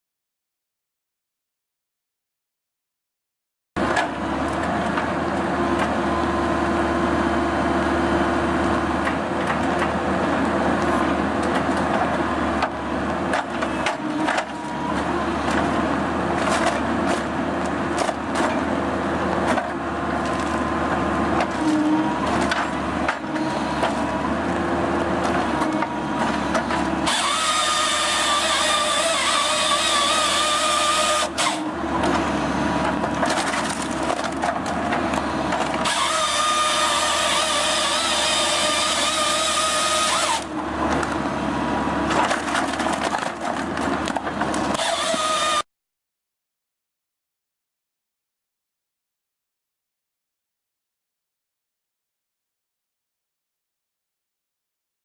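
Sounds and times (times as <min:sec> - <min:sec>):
engine and hydraulic noise: 0:03.8 - 0:45.7
wood cracking and knocking: 0:33.1 - 0:36.6, 0:42.1 - 0:44.7.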